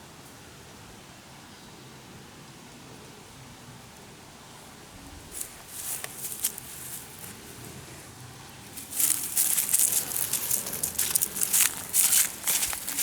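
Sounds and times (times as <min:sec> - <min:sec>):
dry vegetation rustling and crackling: 0:05.2 - 0:13.0.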